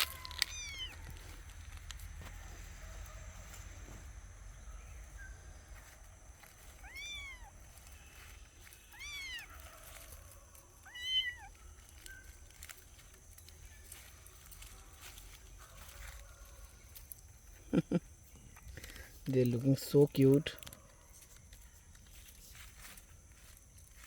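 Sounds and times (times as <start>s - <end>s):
cat meowing: 0.0s - 1.1s, 6.8s - 7.6s, 8.9s - 9.5s, 10.8s - 11.6s.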